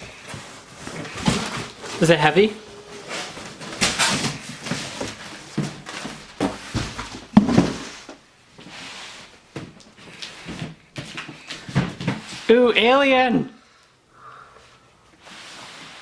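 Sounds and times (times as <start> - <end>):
cardboard rustling: 0.0 - 12.5
packaging thunks: 0.2 - 8.2.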